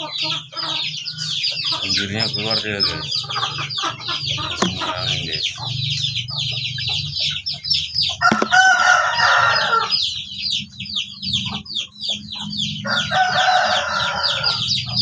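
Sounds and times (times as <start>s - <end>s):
chicks peeping: 0.0s - 15.0s
rooster crowing: 8.2s - 10.1s, 12.8s - 15.0s.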